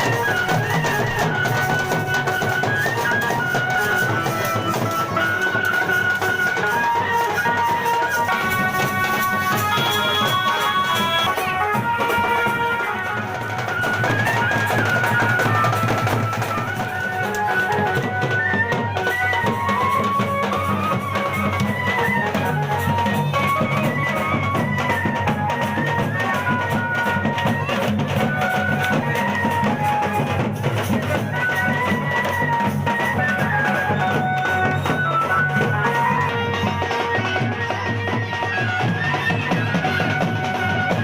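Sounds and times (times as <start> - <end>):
high melody line: 0.0 - 40.3
fast drum beat: 7.6 - 18.8.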